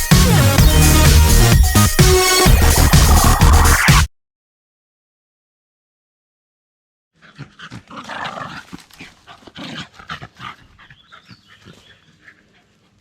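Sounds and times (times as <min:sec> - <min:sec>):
dog panting: 0:08.7 - 0:13.0.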